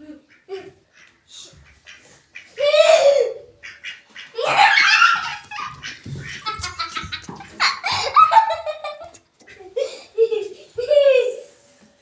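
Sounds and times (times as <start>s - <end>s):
children laughing and giggling: 0.0s - 0.9s, 2.5s - 3.6s, 4.3s - 11.7s.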